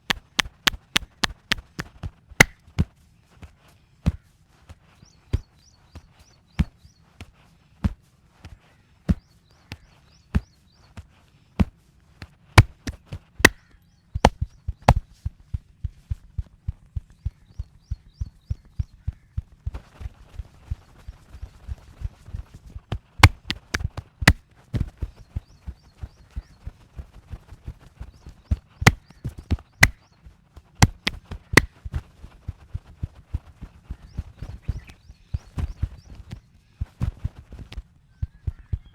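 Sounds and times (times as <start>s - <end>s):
sharp smacks: 0.0s - 2.9s, 12.2s - 15.0s, 23.2s - 24.4s, 28.8s - 30.0s, 30.8s - 31.8s
wooden sticks striking body: 0.0s - 2.9s, 11.6s - 15.3s, 22.9s - 24.9s, 28.5s - 32.1s.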